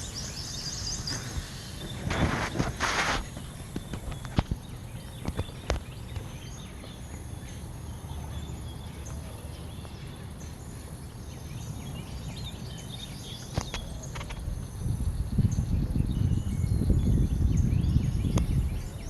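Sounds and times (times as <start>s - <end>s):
birds chirping and calling: 0.0s - 19.0s.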